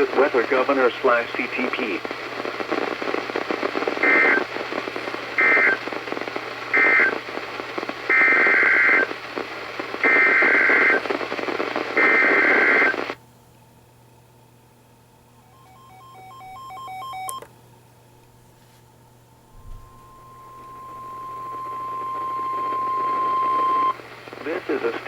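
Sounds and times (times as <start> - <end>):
radio static hiss: 0.0 - 13.2, 19.5 - 25.0
two-tone data warble: 19.6 - 24.0.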